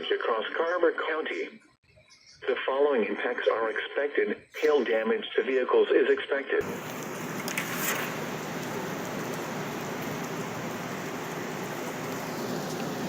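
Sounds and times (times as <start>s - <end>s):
rain falling: 6.6s - 13.0s
short crackle: 6.6s - 13.0s.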